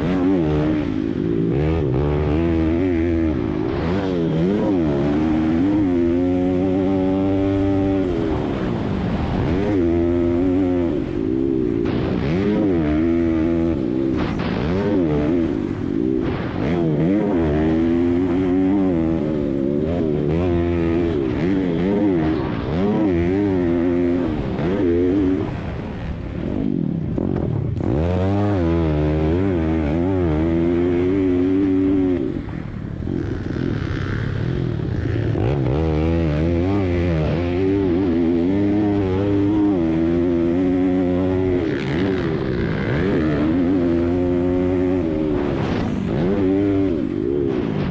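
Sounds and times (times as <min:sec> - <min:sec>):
pit bike engine revving: 0:00.0 - 0:47.9.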